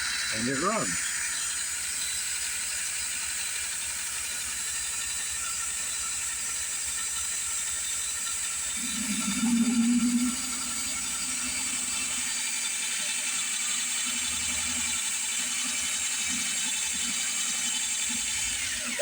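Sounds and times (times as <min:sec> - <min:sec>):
drill motor whirring: 0:00.0 - 0:19.0
low buzz: 0:08.5 - 0:13.1.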